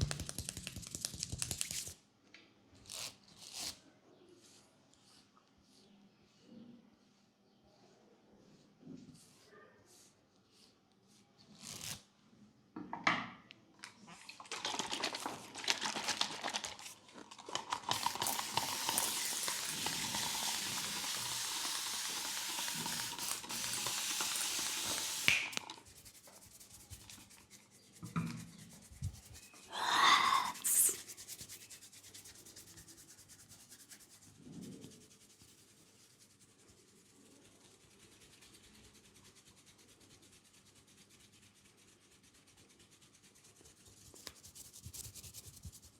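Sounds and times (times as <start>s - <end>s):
hands rubbing hair and scalp: 0.0s - 2.0s, 14.4s - 45.9s.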